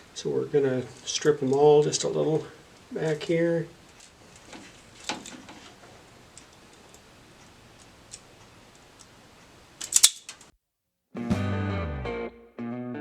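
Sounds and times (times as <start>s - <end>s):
wire stripper clicking and snipping: 9.8s - 10.5s
guitar music: 11.2s - 13.0s.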